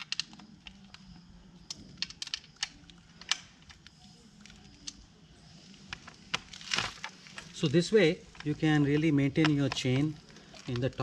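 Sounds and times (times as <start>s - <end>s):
hand tools clicking and tapping: 8.3s - 10.9s.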